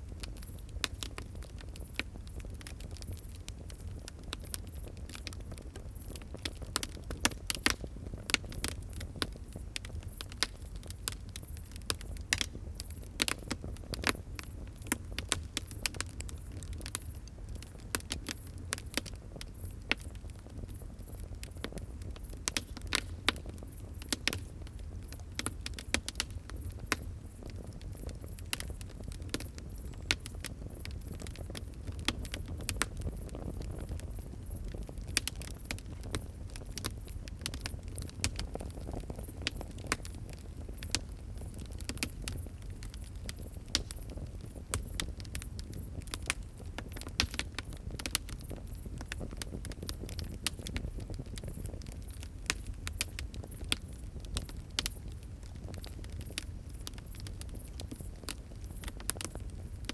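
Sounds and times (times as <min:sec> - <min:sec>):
low rumble of flames: 0:00.0 - 0:59.9
wood fire crackling: 0:00.0 - 0:59.9.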